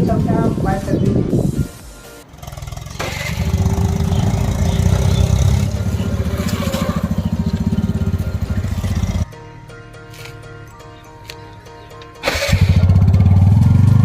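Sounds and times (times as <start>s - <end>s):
motorcycle engine starting and idling: 2.3s - 9.2s, 12.2s - 14.0s.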